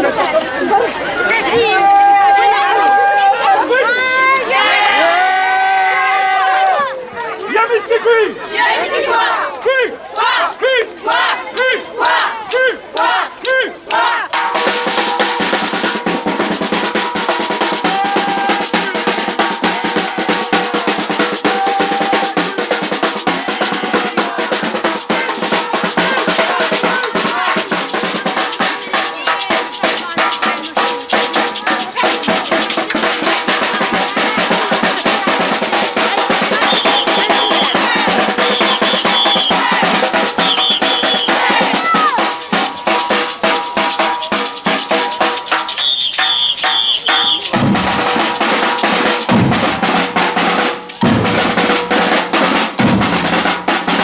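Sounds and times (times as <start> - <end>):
samba drumming: 13.9 - 54.0
short high-pitched calls: 36.5 - 42.2, 45.4 - 47.6.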